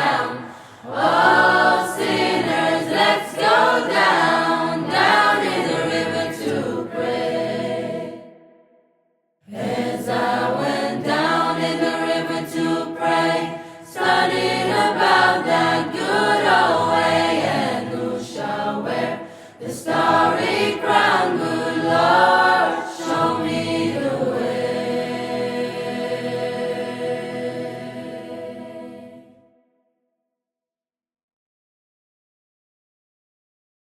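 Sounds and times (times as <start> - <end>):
music with singing voices: 9.5 - 29.4.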